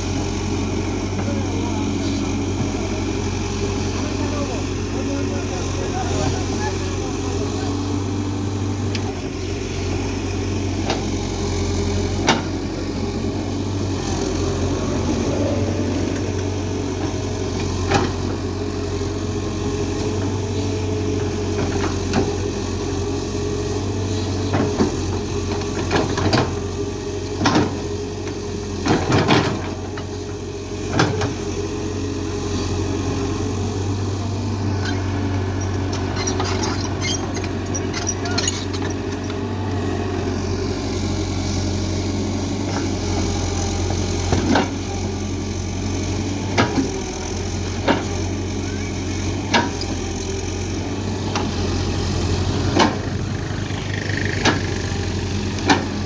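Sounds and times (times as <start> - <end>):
excavator diesel engine running: 0.0 - 56.0.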